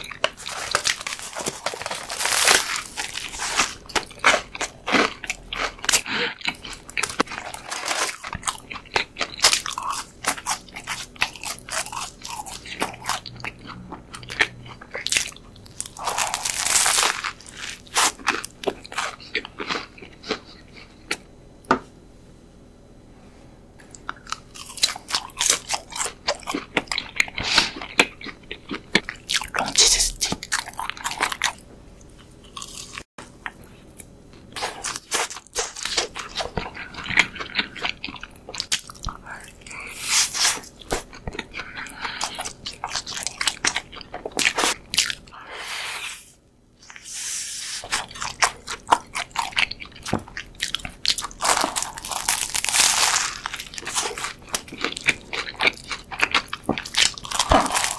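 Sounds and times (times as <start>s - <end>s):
wet chewing: 47.8s - 57.9s
crunchy bites of fried chicken: 47.9s - 57.9s.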